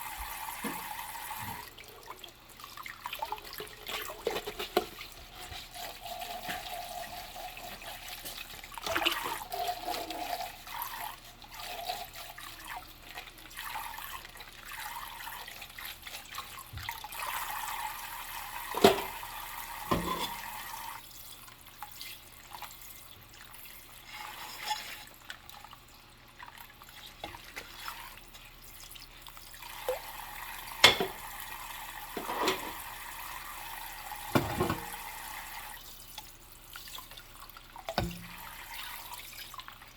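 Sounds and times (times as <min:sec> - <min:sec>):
running tap water: 0:00.0 - 0:39.9
dishes clinking: 0:19.9 - 0:20.4, 0:30.8 - 0:31.2, 0:32.2 - 0:32.8.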